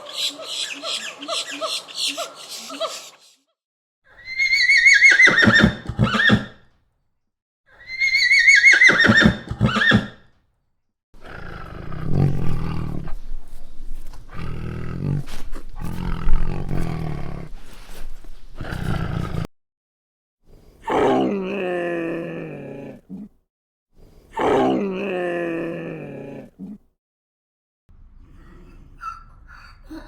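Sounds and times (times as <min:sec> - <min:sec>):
horse whinnying: 0:04.1 - 0:06.6, 0:07.8 - 0:10.2
low rough animal sounds: 0:11.2 - 0:17.9.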